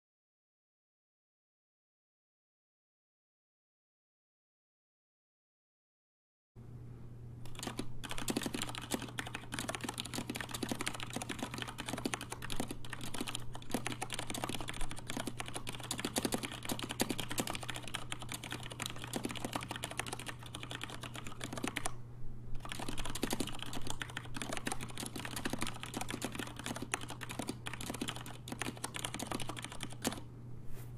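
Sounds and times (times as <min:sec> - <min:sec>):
steady low hum: 0:06.6 - 0:30.9
fast typing on mechanical keyboard: 0:07.5 - 0:21.9, 0:22.6 - 0:30.2.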